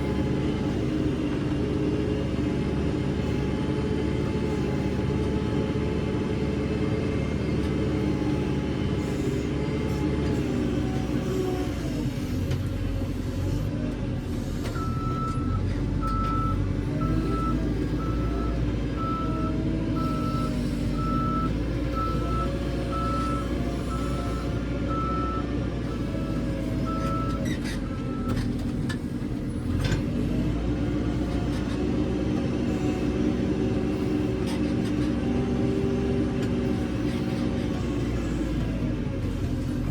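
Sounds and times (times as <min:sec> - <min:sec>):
diesel engine running under load: 0:00.0 - 0:39.9
reversing alarm beeping: 0:14.8 - 0:28.4.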